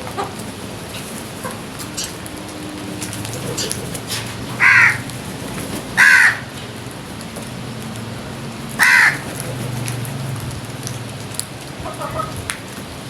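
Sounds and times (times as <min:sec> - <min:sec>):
crow cawing: 0:04.6 - 0:05.1, 0:06.0 - 0:06.5, 0:08.8 - 0:09.3.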